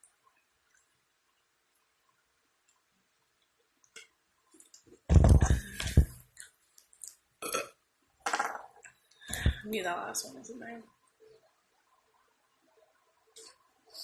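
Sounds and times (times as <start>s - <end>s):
woman burping: 7.4s - 8.6s.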